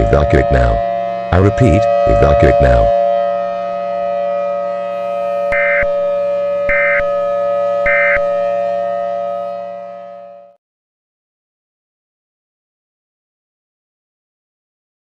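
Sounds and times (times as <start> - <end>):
civil defense siren: 0.0 - 10.6
alert data tone bursts: 4.9 - 6.0, 6.7 - 7.1, 7.9 - 8.3.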